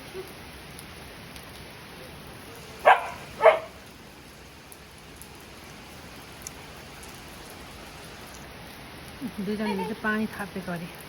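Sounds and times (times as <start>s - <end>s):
rain falling: 0.0s - 11.0s
dog barking: 2.8s - 3.8s.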